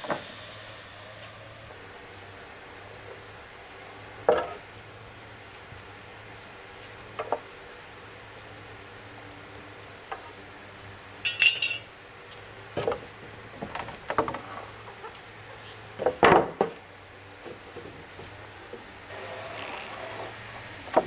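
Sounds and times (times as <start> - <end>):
objects knocking and clinking: 11.3 - 11.9.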